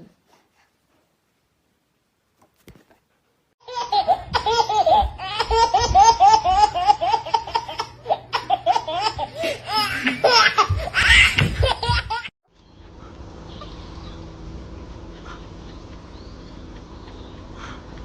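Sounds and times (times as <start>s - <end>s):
high-pitched laughing: 8.3s - 12.3s.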